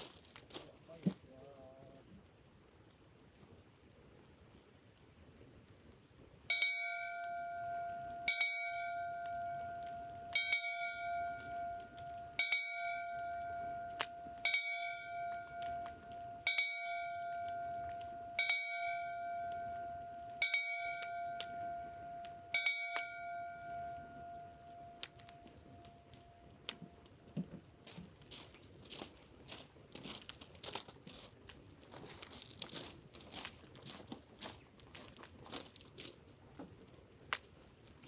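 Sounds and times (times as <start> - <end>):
hand bell clanging: 6.5 - 26.5.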